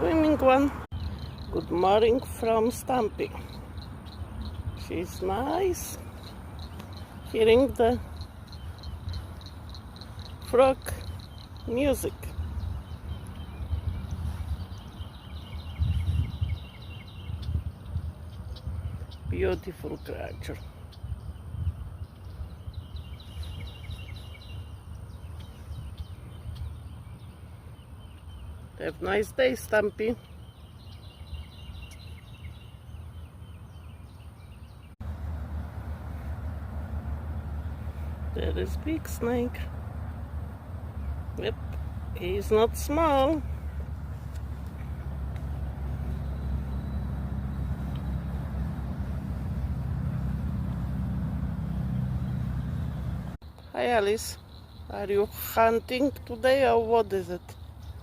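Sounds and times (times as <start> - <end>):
steady low rumble: 34.9 - 53.4.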